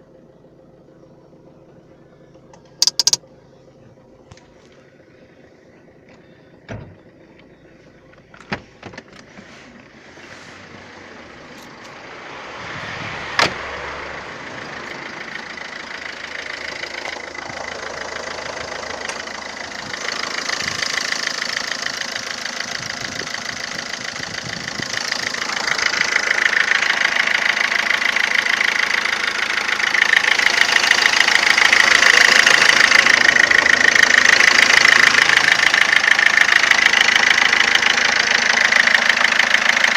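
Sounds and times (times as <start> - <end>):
diesel engine rattling: 0.0 - 39.9
sharp clicks: 2.5 - 3.2.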